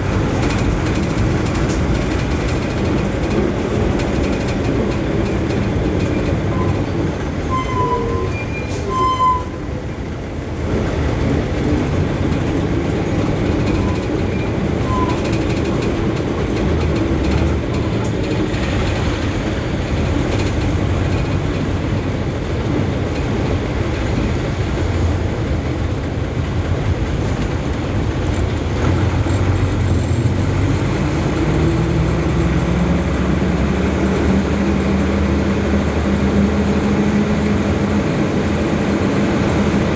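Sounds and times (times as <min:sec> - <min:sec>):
heavy vehicle engines rumbling: 0:00.0 - 0:39.9
steady engine drone: 0:15.7 - 0:39.9.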